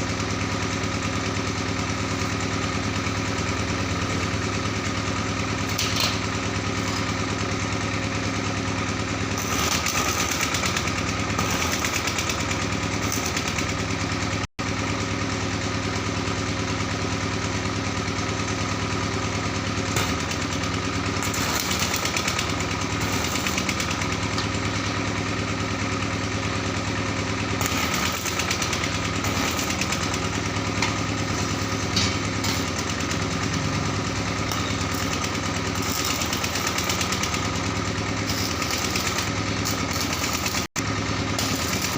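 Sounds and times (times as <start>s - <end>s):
machine droning: 9.2s - 13.8s, 19.8s - 41.9s.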